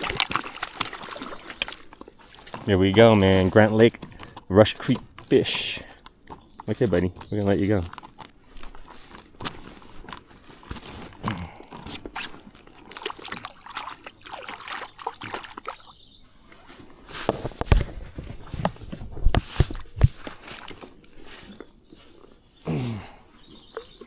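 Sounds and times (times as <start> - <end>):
handling clicks and knocks: 0.0 - 13.6
water sloshing and dripping: 0.0 - 22.3.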